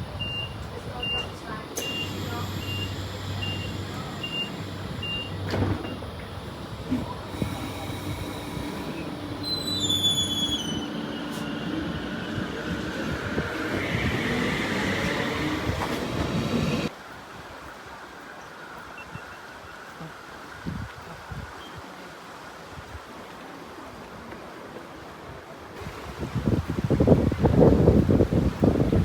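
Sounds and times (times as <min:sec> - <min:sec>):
high warning beeps: 0:00.1 - 0:16.9
falling squeal: 0:07.3 - 0:16.9.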